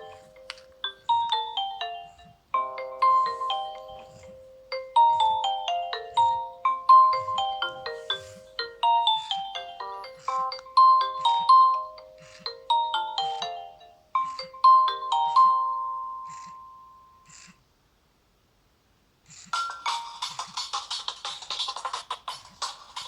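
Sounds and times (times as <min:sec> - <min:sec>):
phone ringtone melody: 0:00.0 - 0:17.3, 0:19.6 - 0:20.7.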